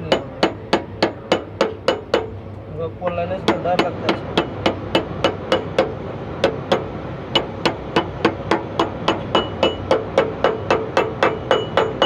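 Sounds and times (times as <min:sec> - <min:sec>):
hammer striking ringing steel: 0:03.5 - 0:12.0.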